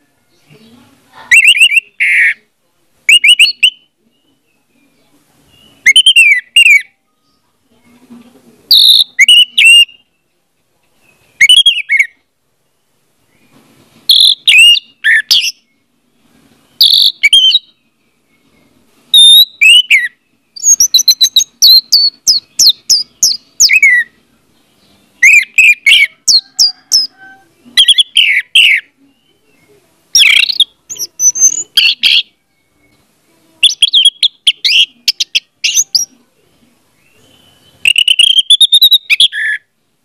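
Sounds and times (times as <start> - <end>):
thrush singing whistled notes: 1.3 - 2.5, 3.1 - 7.4, 8.7 - 10.4, 11.1 - 12.2, 13.2 - 15.9, 16.7 - 24.2, 24.8 - 33.0, 33.6 - 36.2, 37.0 - 39.7.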